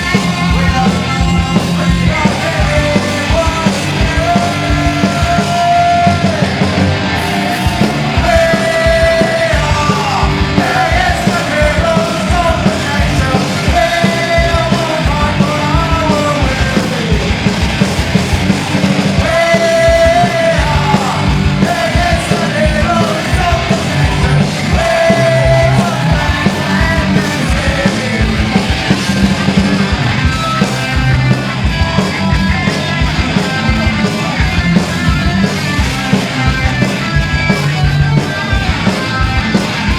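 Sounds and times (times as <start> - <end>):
fast drumming: 0.0 - 39.9
punk band playing live: 0.0 - 39.9
shouted vocal: 4.2 - 14.7, 19.2 - 28.4.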